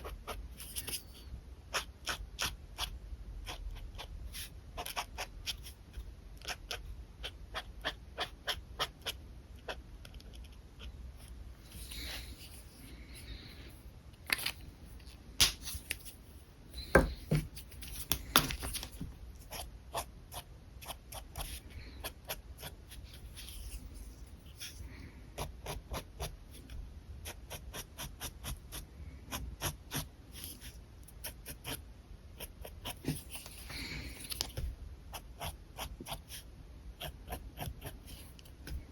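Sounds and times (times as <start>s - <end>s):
pen scratching on paper: 1.7s - 12.8s, 19.4s - 34.4s, 35.1s - 38.9s.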